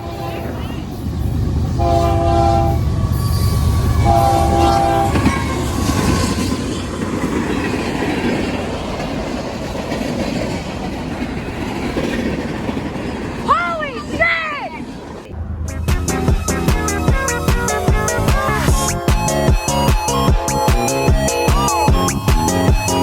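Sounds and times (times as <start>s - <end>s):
train horn chord blasts: 0.0s - 0.6s, 1.8s - 5.6s
locomotive low rumble: 0.0s - 7.6s, 15.1s - 23.0s
train rail noise: 0.0s - 23.0s.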